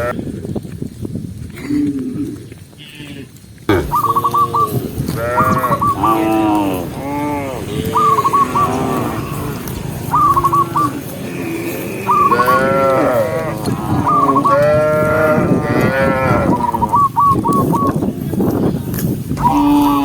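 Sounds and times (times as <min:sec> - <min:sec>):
cow mooing: 0:02.9 - 0:16.8, 0:19.4 - 0:20.0
high warbling call: 0:03.7 - 0:04.8.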